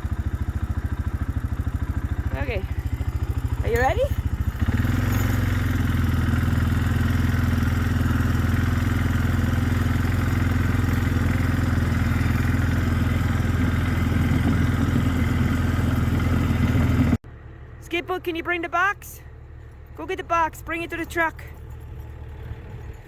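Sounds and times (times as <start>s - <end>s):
car engine running at raised revs: 0.0s - 17.2s.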